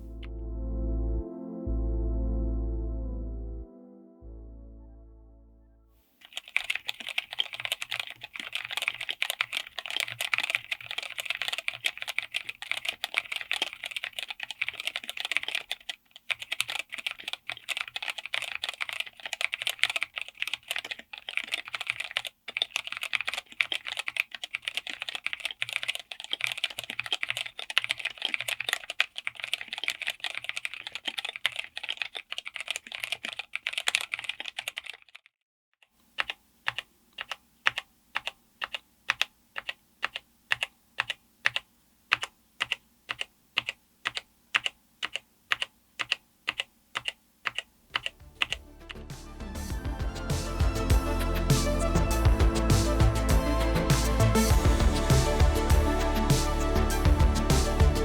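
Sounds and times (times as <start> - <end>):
typing on mechanical keyboard: 6.2 - 35.3, 35.9 - 49.0.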